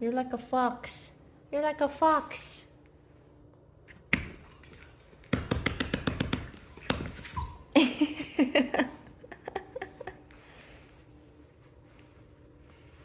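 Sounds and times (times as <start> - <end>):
dog claws clicking and tapping: 4.1 - 7.2.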